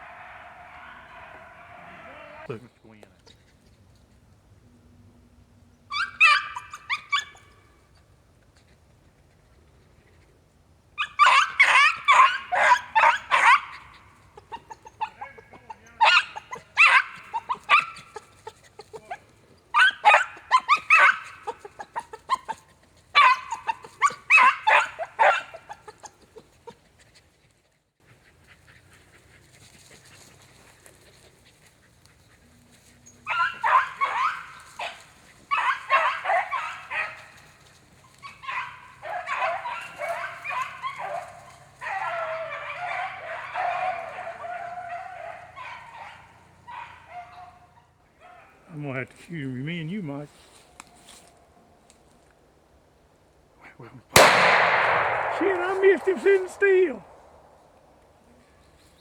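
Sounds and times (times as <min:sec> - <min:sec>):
beagles baying: 0:00.0 - 0:02.5, 0:05.9 - 0:07.9, 0:11.0 - 0:26.8, 0:32.4 - 0:48.7, 0:54.2 - 0:58.0.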